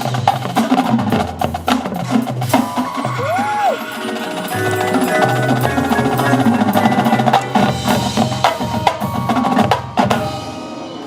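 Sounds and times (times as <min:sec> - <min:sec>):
wood block and mallet percussion: 0:02.0 - 0:10.4.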